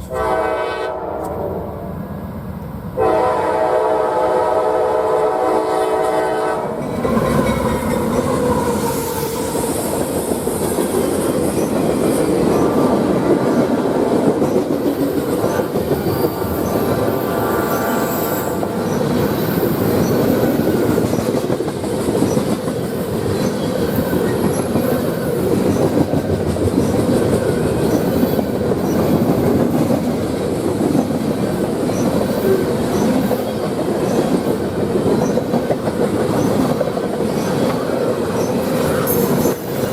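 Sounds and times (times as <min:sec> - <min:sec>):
train air horn: 0:00.0 - 0:01.8, 0:03.0 - 0:06.8
train cars rumbling: 0:00.0 - 0:39.9
wheels clicking over rail joints: 0:06.8 - 0:17.2.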